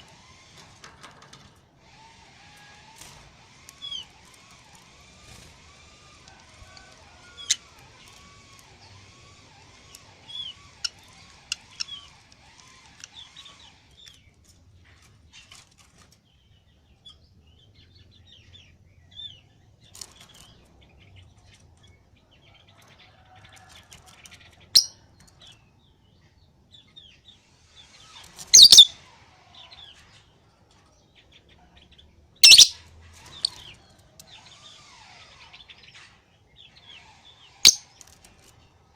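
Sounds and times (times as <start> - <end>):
loud short bird calls: 28.6 - 28.9, 32.4 - 32.8
lovebird chirping: 28.6 - 28.9, 32.4 - 32.8.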